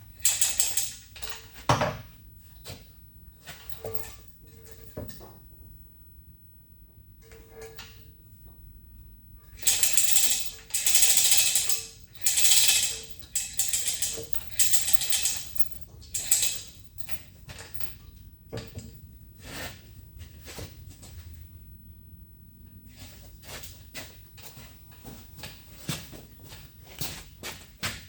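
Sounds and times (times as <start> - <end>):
metal rattling and clicking: 0.1 - 1.6, 3.6 - 4.2, 9.6 - 18.0.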